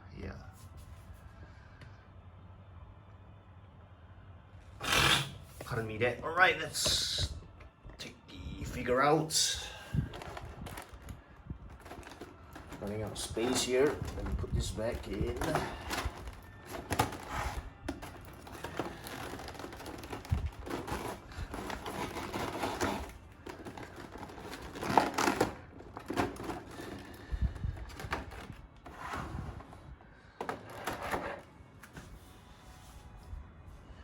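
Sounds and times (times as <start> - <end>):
packaging rustling and crinkling: 9.6 - 31.5.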